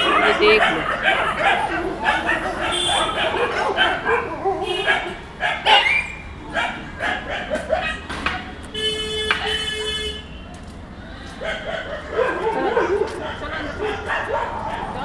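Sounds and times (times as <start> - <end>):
dogs barking: 0.0 - 10.0, 11.3 - 15.0
vehicle horn: 2.7 - 3.3, 4.6 - 5.2, 8.7 - 10.4.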